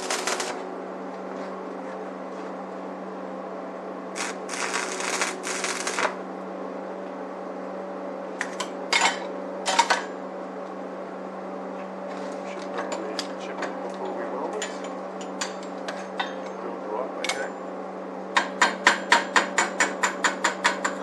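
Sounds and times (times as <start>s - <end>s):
welding arc crackling: 0.0s - 0.7s, 4.1s - 6.2s
welder humming: 0.0s - 1.4s, 4.1s - 6.5s.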